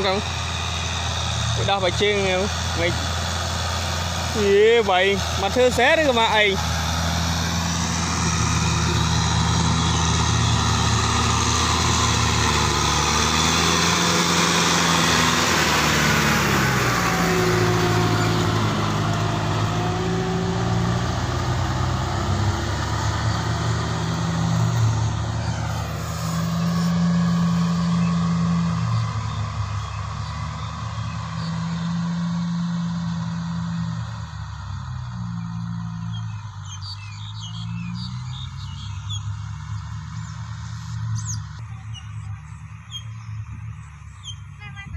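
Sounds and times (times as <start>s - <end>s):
tractor diesel engine running: 0.0s - 44.9s.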